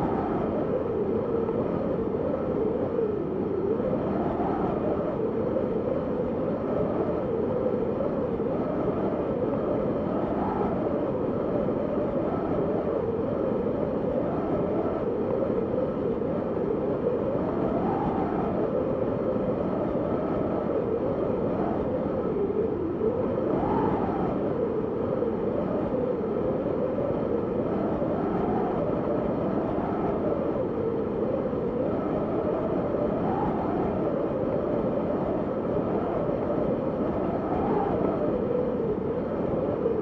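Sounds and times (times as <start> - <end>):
snowstorm wind whistling: 0.0 - 40.0.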